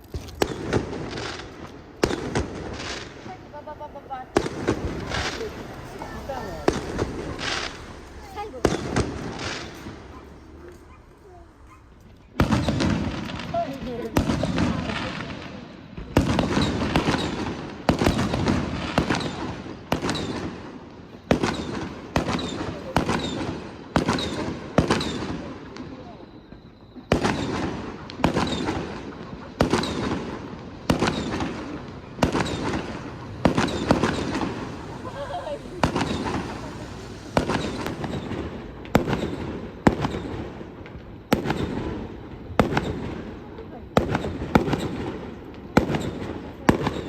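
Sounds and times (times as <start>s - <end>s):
fireworks shells bursting: 4.1s - 15.6s, 30.9s - 43.2s.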